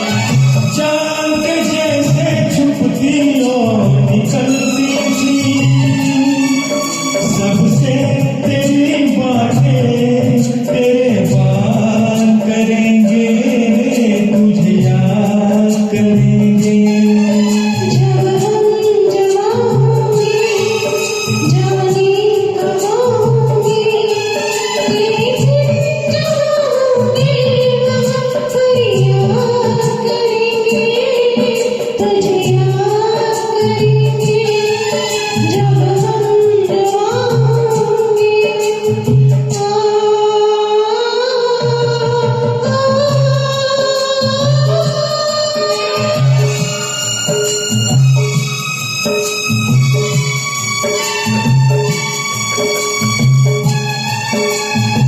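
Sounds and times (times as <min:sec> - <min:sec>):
instrumental karaoke backing track: 0:00.0 - 0:55.0.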